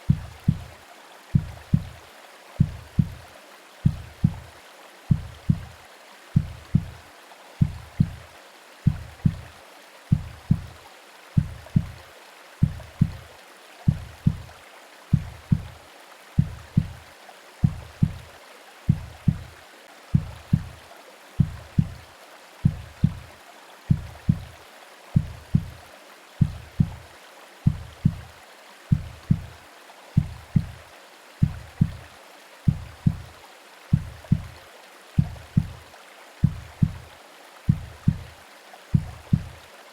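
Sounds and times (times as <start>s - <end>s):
slow heartbeat thumps: 0.0s - 0.8s, 1.4s - 2.0s, 2.6s - 4.5s, 5.1s - 5.8s, 6.4s - 7.0s, 7.6s - 9.5s, 10.1s - 10.8s, 11.4s - 12.0s, 12.6s - 13.2s, 13.9s - 14.5s, 15.1s - 15.8s, 16.4s - 18.3s, 18.9s - 19.5s, 20.1s - 20.8s, 21.4s - 22.0s, 22.6s - 23.3s, 23.9s - 24.6s, 25.2s - 25.8s, 26.4s - 27.0s, 27.7s - 28.3s, 28.9s - 29.6s, 30.2s - 30.8s, 31.4s - 32.1s, 32.7s - 33.3s, 33.9s - 34.6s, 35.2s - 35.8s, 36.4s - 37.1s, 37.7s - 38.4s, 39.0s - 39.6s
white noise hiss: 0.0s - 39.9s.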